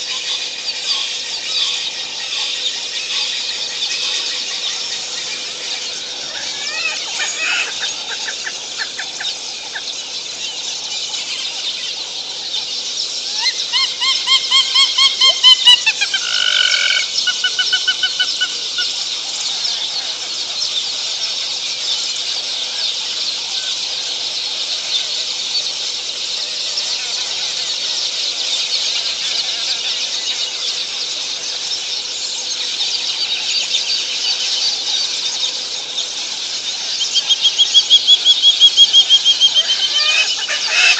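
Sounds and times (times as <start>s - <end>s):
bird calling harshly: 4.5s - 10.2s, 13.3s - 18.9s, 37.1s - 40.9s.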